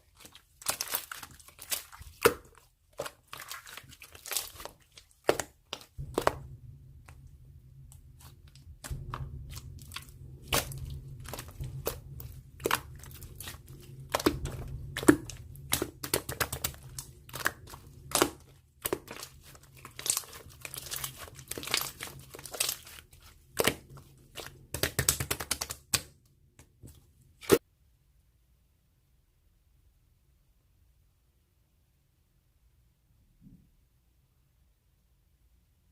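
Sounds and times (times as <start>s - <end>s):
thin material crinkling and tearing: 0.0s - 6.4s, 7.9s - 26.1s
steady low hum: 6.0s - 18.5s.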